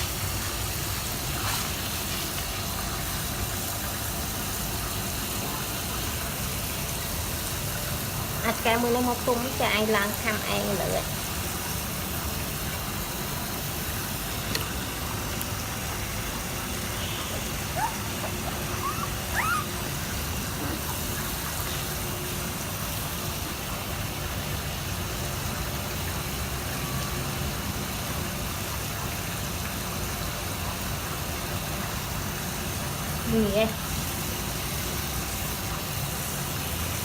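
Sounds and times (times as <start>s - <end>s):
running water: 0.0s - 37.0s
puppy whimpering: 17.2s - 21.3s.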